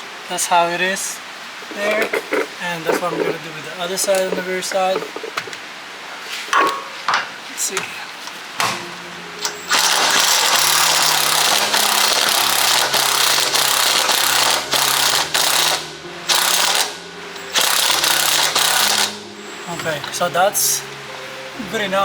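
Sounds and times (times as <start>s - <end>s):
power wrench whirring and hammering: 9.4s - 19.2s.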